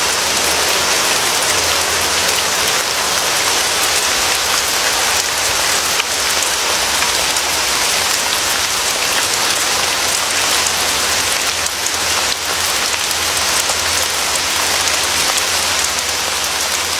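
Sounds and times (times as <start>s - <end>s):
steady rain falling: 0.0s - 16.9s.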